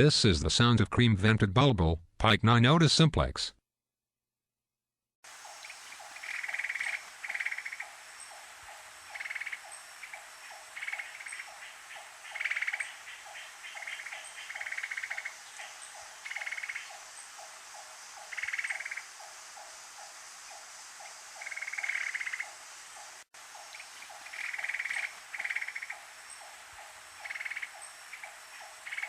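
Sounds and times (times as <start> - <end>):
bird buzzy rattling calls: 5.4 - 8.4, 9.1 - 17.4, 23.6 - 29.0.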